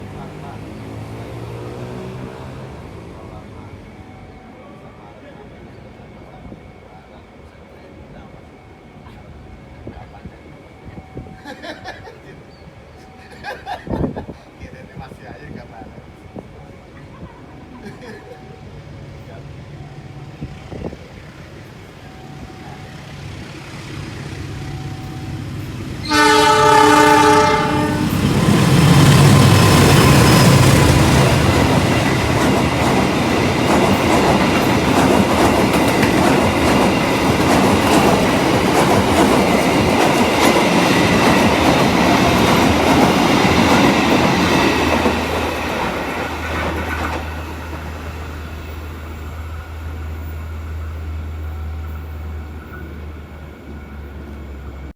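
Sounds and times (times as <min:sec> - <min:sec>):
train wheels clacking over rails: 0:23.0 - 0:49.2
train horn chord: 0:26.0 - 0:31.5.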